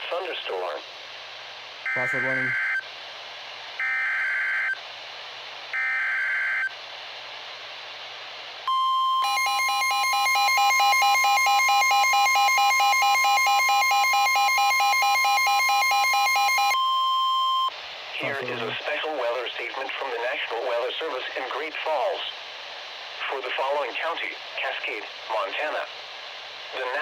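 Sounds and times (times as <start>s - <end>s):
digital data bursts: 1.9s - 2.8s
steady warning alarm tone: 1.9s - 2.8s, 8.7s - 17.7s.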